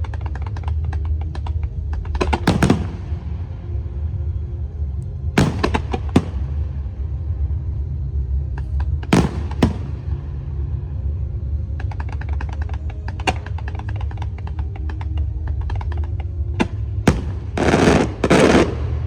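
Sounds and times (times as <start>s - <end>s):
steady low rumble: 0.0s - 19.0s
fireworks bangs: 2.4s - 3.4s, 5.4s - 6.7s, 9.1s - 10.2s, 17.1s - 19.0s
fireworks crackling: 5.4s - 6.6s, 17.1s - 19.0s.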